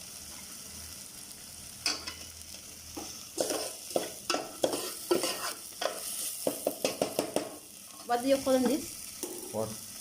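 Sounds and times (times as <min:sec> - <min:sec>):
paste sizzling in oil: 0:00.0 - 0:10.0
spoon scraping a pan: 0:02.9 - 0:09.6.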